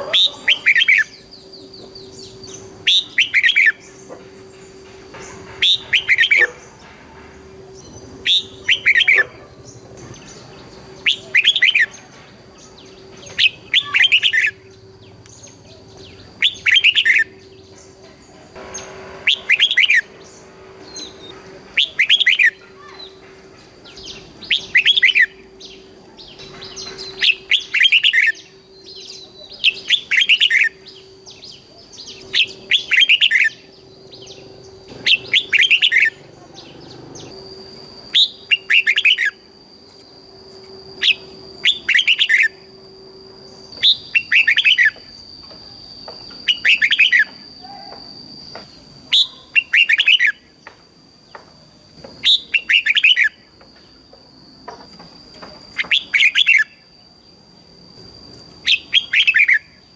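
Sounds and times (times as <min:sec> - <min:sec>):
bulbul singing warbling phrases: 0:00.0 - 0:04.1, 0:04.7 - 0:06.8, 0:07.7 - 0:39.4, 0:41.0 - 0:42.7, 0:43.5 - 0:45.0, 0:49.0 - 0:50.5.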